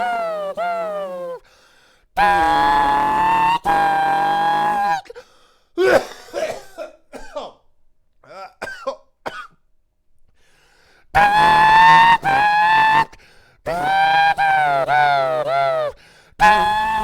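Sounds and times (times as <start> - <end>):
man imitating engine whine: 0.0 - 1.4, 2.2 - 5.1, 11.2 - 17.0
sputtering vocal bursts: 0.0 - 1.4, 2.2 - 5.0, 11.2 - 17.0.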